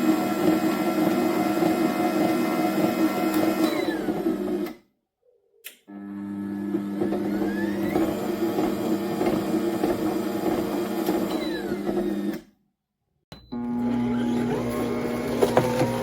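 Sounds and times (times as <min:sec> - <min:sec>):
appliance motor humming: 0:13.5 - 0:16.0.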